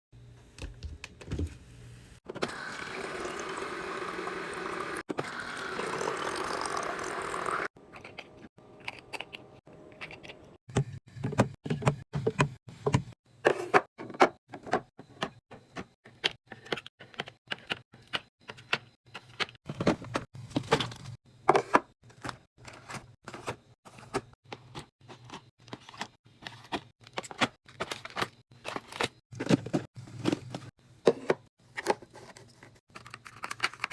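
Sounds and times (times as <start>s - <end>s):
items clicking and clinking: 7.8s - 33.9s.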